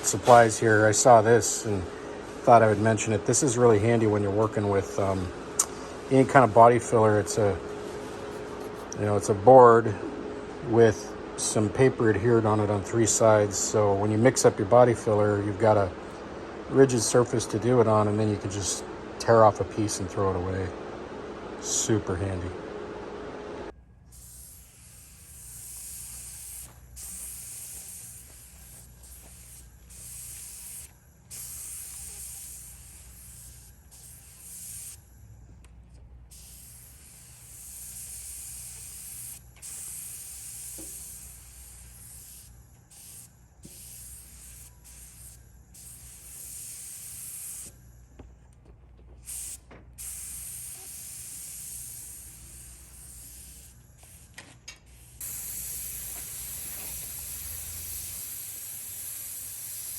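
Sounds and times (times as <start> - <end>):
compressed air hissing: 0.0 - 9.1, 24.1 - 35.5, 36.3 - 48.2, 49.2 - 59.9.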